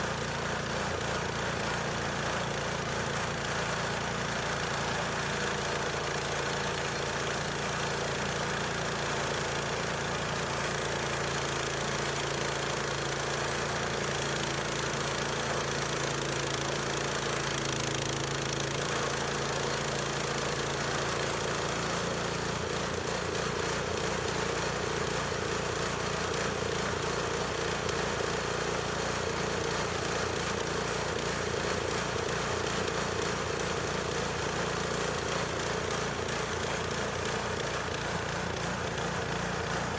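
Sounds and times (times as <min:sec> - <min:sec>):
small gasoline engine running: 0:00.0 - 0:39.9.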